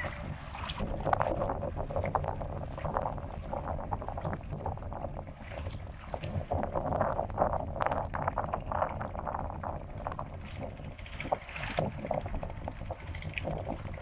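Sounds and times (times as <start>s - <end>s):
small waves lapping: 0.0s - 1.4s, 2.6s - 6.8s, 8.8s - 14.0s
wind rumbling on microphone: 0.0s - 14.0s.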